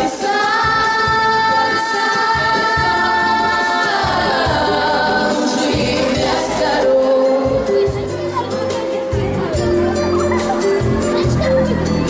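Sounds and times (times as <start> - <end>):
girls singing in unison: 0.0 - 7.9
backing music: 0.0 - 12.0.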